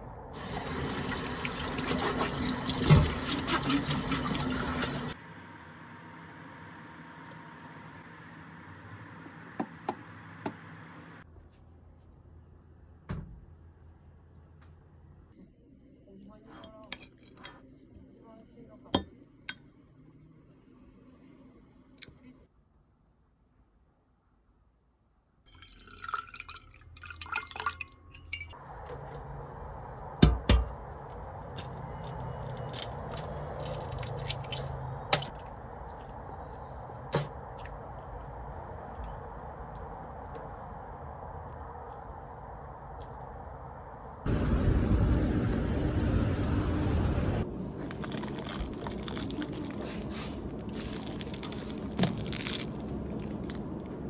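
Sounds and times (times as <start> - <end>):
liquid dripping and pouring: 0.4 - 5.2, 25.5 - 28.6, 31.6 - 36.1, 47.8 - 54.0
glass and tableware clinking: 25.5 - 28.6
steady background hum: 28.4 - 54.0
crinkling handling noises: 47.4 - 54.0.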